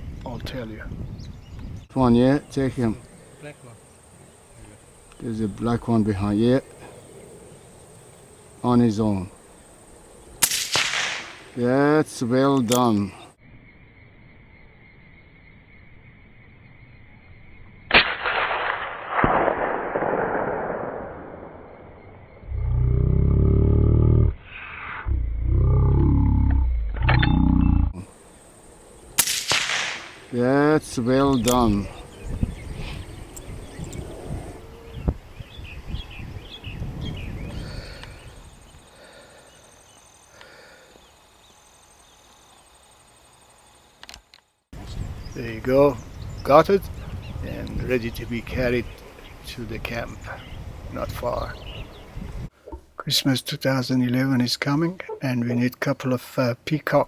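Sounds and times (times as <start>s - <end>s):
insects trilling: 0.0s - 18.5s, 21.2s - 57.0s
rifle shot with rolling echo: 10.4s - 11.6s, 17.9s - 22.4s, 29.2s - 30.4s
sharp crack: 10.4s - 11.8s, 17.9s - 22.3s, 29.1s - 32.0s
loud low rumbling: 19.6s - 24.4s, 25.0s - 28.0s.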